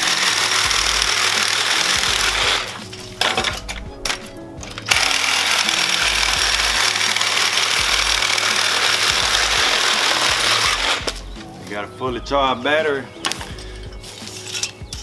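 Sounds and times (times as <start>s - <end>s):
reciprocating saw cutting metal: 0.0s - 11.3s.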